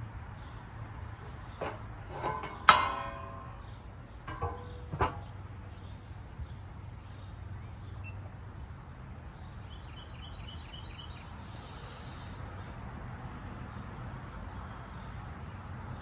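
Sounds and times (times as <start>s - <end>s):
low outdoor background hum: 0.0s - 16.0s
bird chirping: 9.3s - 12.8s.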